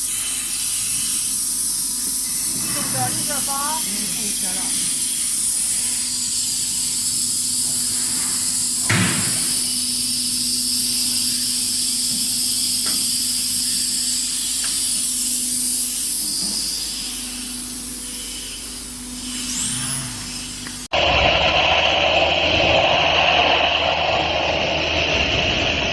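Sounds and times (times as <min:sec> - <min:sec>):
sandblaster jet hissing: 0:00.0 - 0:25.9
low hum: 0:16.8 - 0:25.9.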